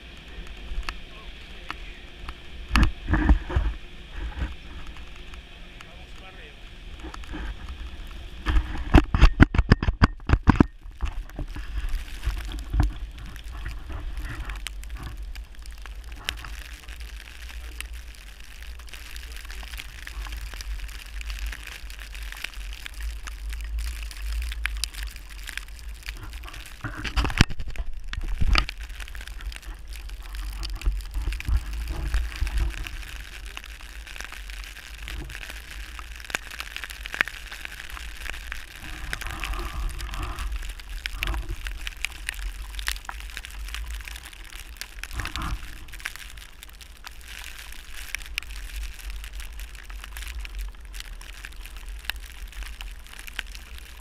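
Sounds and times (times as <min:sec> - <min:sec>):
hiss of snow: 0:00.0 - 0:09.0, 0:11.0 - 0:27.4, 0:28.2 - 0:44.0
wind rumbling on microphone: 0:00.0 - 0:54.0
small ticks and knocks: 0:00.2 - 0:01.0, 0:01.6 - 0:54.0.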